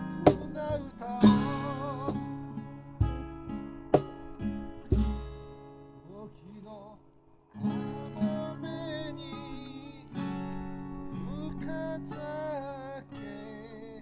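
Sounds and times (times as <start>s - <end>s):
person singing: 0.0s - 2.5s
acoustic guitar strumming: 0.0s - 14.0s.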